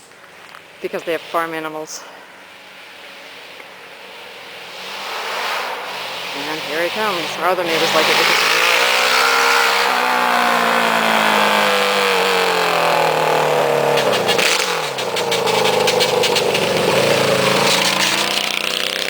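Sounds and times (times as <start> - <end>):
motorcycle engine revving by: 4.2 - 19.0.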